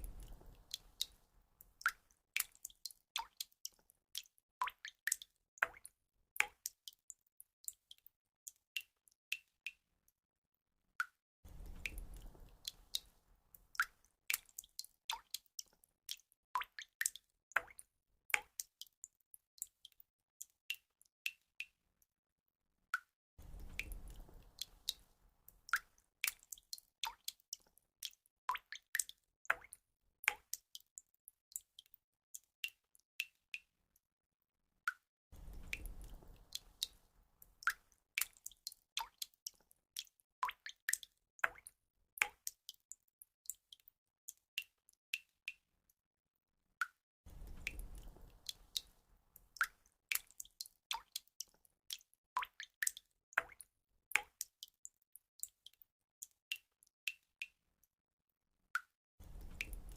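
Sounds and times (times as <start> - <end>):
low rumbling water sound: 0.0 - 1.5, 11.5 - 14.0, 23.4 - 25.5, 35.4 - 37.9, 47.3 - 49.9, 59.2 - 59.9.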